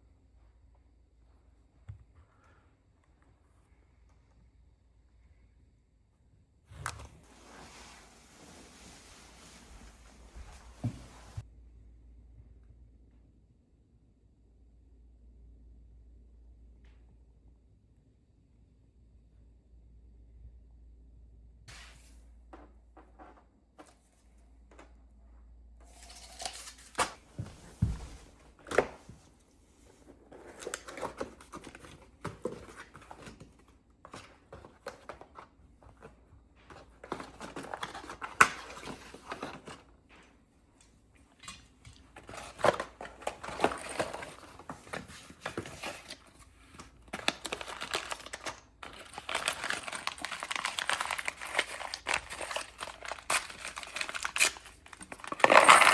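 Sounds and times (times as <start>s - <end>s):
plastic wrapping crinkling: 42.2s - 55.9s.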